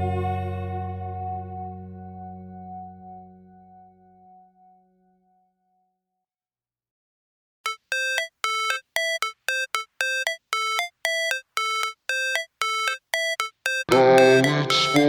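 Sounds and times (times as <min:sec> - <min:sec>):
electronic beeping notes: 0:07.7 - 0:15.0.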